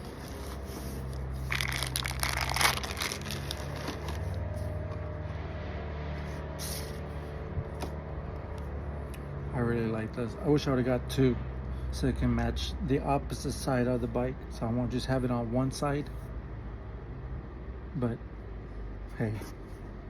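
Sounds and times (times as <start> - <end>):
packaging rustling and crinkling: 0.0 - 4.8
low hum: 0.0 - 11.8.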